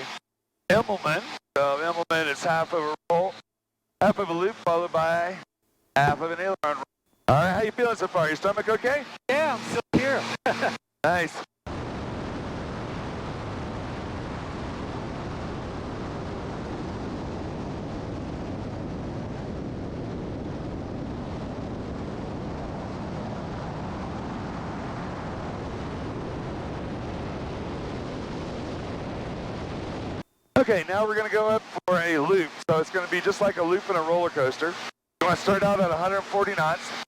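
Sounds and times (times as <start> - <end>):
airplane cockpit noise: 6.0 - 11.5, 30.1 - 37.0.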